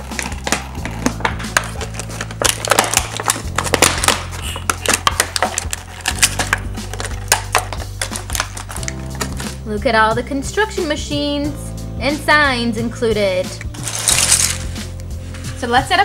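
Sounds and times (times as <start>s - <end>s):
plastic packaging crackling: 0.0s - 9.6s, 13.7s - 15.0s
background music with bass: 0.0s - 16.0s.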